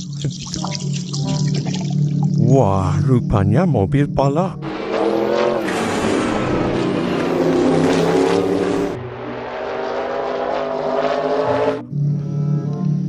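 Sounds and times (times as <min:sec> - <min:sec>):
race car engine revving: 0:04.3 - 0:11.8.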